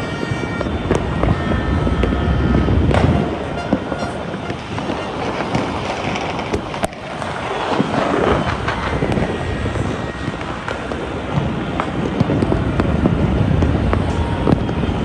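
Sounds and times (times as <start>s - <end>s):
distant fireworks popping and crackling: 0.0s - 15.0s
wind rumbling on microphone: 0.0s - 15.0s
sharp firework bang: 0.6s - 9.4s.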